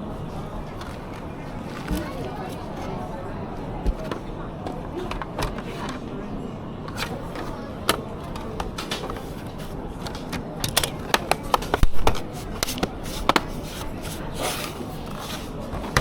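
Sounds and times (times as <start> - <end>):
clicks and taps of tools: 10.0 - 13.5.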